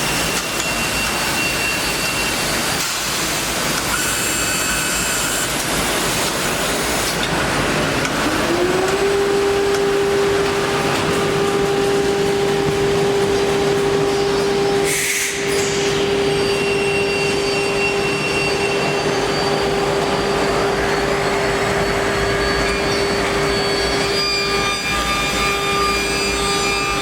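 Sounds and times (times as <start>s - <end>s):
motor high whine: 8.0s - 27.0s.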